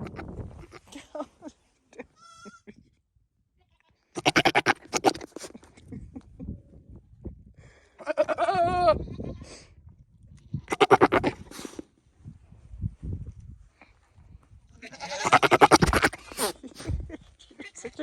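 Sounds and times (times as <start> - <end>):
goat wavering bleat: 0.0 - 0.8, 3.7 - 5.5, 8.0 - 9.4, 10.6 - 11.5, 14.8 - 16.6
goat stuttering pulsed calls: 4.2 - 5.5, 10.7 - 11.5, 15.0 - 16.6.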